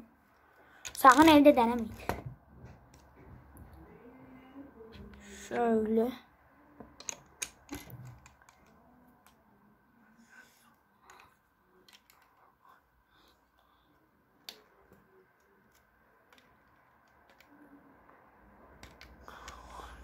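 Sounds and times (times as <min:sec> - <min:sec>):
plastic bricks clicking: 0:07.0 - 0:09.4, 0:15.7 - 0:17.5, 0:18.8 - 0:19.6.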